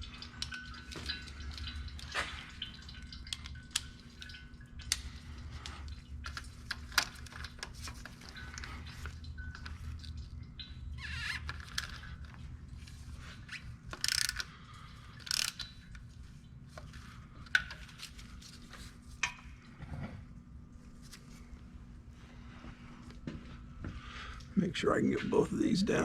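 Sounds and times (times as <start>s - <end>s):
wrench clicking and ratcheting: 13.9s - 14.5s, 15.2s - 15.7s.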